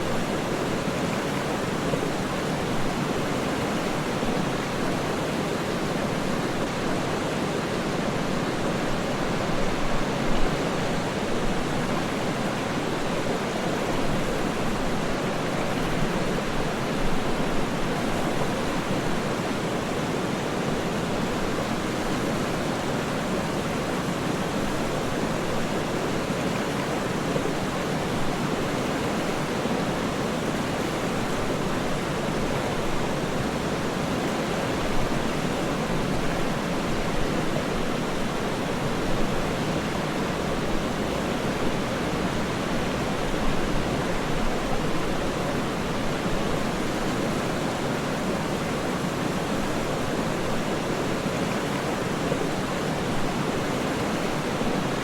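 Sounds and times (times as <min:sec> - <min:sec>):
waterfall rushing: 0:22.6 - 0:55.0.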